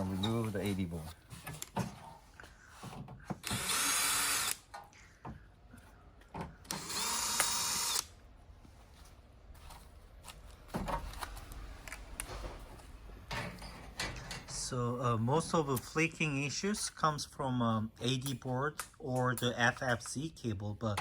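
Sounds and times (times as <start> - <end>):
power screwdriver running: 3.4 - 4.7, 6.7 - 8.1.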